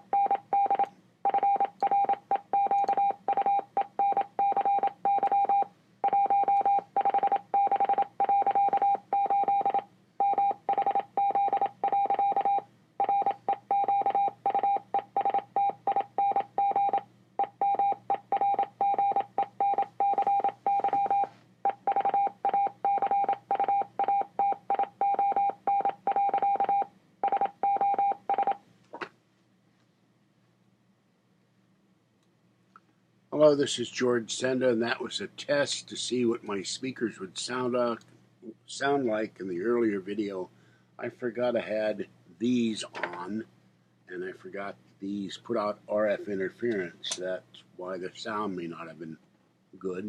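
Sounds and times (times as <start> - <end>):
morse code beeps: 0.1 - 28.6.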